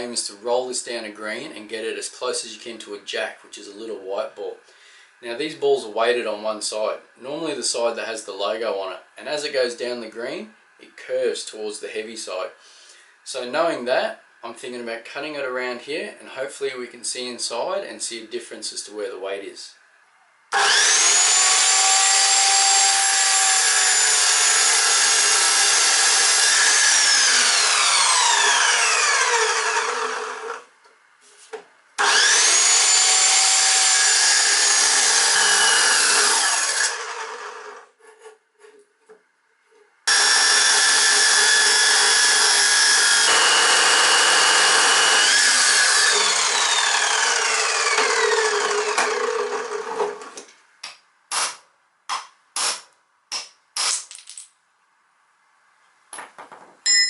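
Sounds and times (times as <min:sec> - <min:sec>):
grinder cutting hard plastic: 0:20.5 - 0:30.6, 0:32.0 - 0:37.9, 0:40.1 - 0:50.5, 0:52.6 - 0:54.1.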